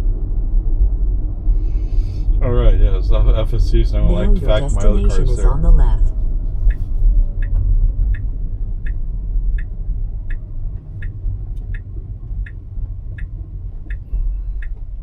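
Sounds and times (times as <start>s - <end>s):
low car cabin rumble: 0.0s - 15.0s
turn signal ticking: 3.9s - 15.0s.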